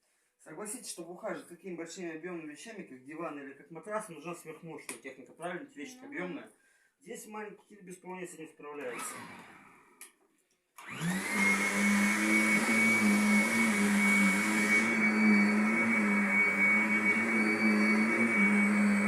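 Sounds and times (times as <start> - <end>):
vacuum cleaner running: 8.8 - 9.9, 10.8 - 19.0.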